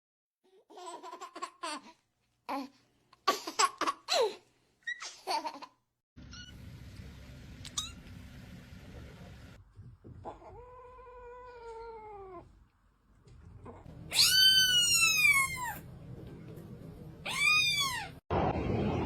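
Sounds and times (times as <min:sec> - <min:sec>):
kittens meowing: 0:14.1 - 0:15.8.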